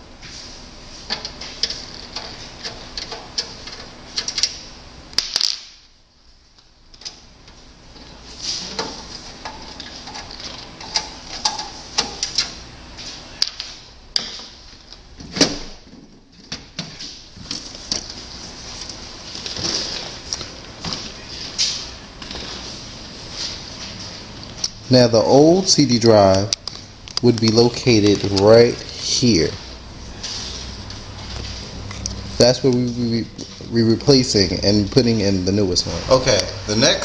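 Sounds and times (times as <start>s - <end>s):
tools and sheet metal clicking: 1.0s - 4.6s, 8.7s - 12.6s.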